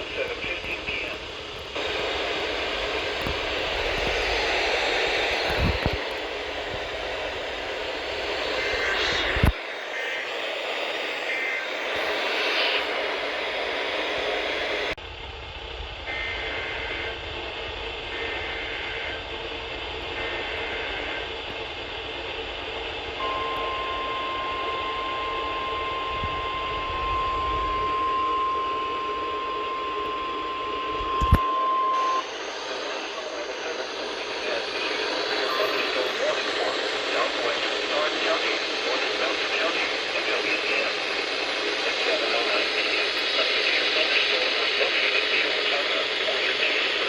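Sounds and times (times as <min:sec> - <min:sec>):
receiver static: 0:00.0 - 0:15.0, 0:16.0 - 0:47.0
warbling data bursts: 0:01.8 - 0:15.0
steady warning alarm tone: 0:23.1 - 0:45.6.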